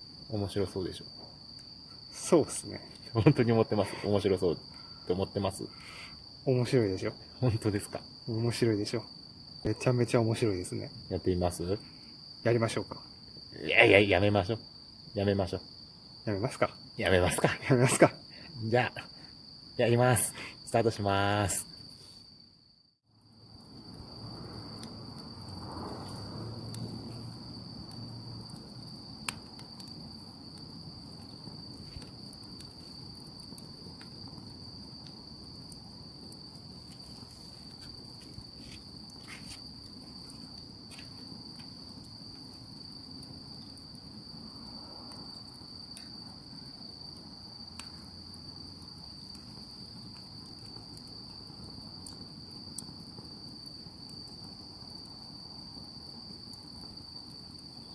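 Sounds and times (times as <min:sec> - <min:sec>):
insect high trill: 0:00.0 - 0:28.6.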